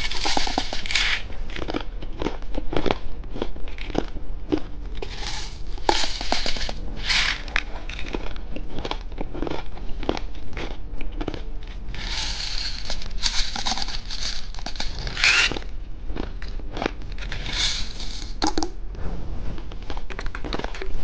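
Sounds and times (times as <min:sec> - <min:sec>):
plastic packaging crinkling: 0:00.0 - 0:01.3, 0:12.0 - 0:15.6.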